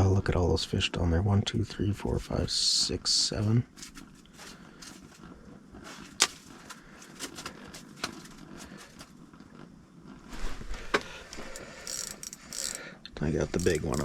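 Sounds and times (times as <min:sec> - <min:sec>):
faint handling noise: 0:03.2 - 0:12.8, 0:13.4 - 0:14.0.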